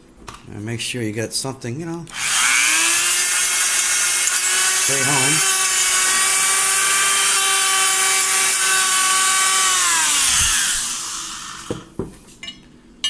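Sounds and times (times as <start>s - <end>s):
rotary tool spinning down: 2.1s - 11.8s
rotary tool whining: 2.1s - 11.9s.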